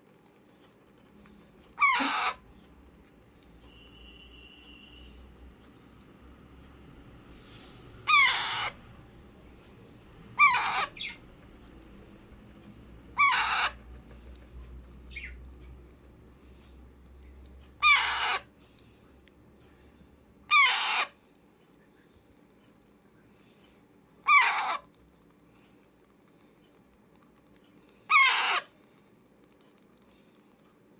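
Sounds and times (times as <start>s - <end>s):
parakeet calling: 1.8s - 2.6s, 8.0s - 8.9s, 10.3s - 11.3s, 13.1s - 13.8s, 15.1s - 15.5s, 17.8s - 18.5s, 20.5s - 21.2s, 24.2s - 24.9s, 28.1s - 28.8s.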